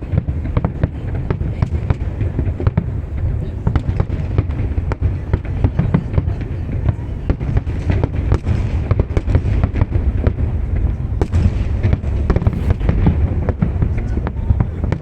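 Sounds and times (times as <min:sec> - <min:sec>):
fireworks crackles and bangs: 0:00.0 - 0:15.0
low rumble of booming shells: 0:07.4 - 0:15.0.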